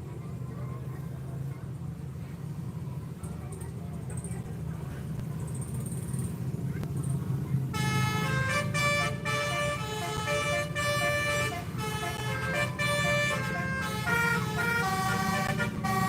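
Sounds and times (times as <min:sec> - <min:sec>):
low rumble of bus engine: 0:00.0 - 0:16.0
musical air horn playing a tune: 0:07.7 - 0:16.0.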